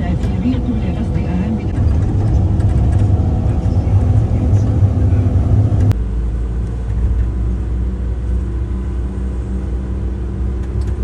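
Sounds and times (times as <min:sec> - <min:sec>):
vehicle engine and road rumble: 0:00.0 - 0:11.0
click: 0:10.6 - 0:11.0.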